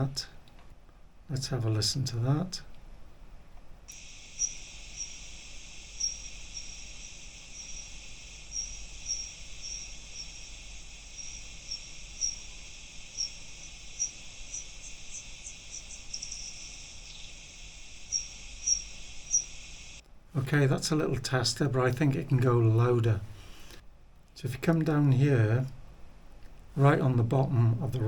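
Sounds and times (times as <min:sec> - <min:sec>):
steady hiss: 0:01.2 - 0:25.8
slowed bat chirps: 0:03.9 - 0:20.0.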